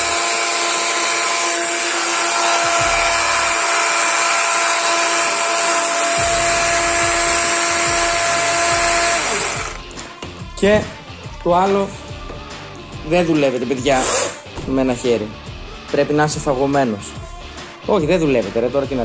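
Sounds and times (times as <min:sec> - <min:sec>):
electric chainsaw running: 0:00.0 - 0:10.0, 0:13.8 - 0:14.4.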